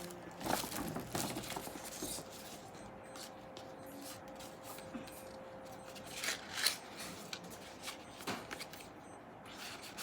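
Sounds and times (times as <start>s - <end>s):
packaging rustling: 0.0s - 2.3s.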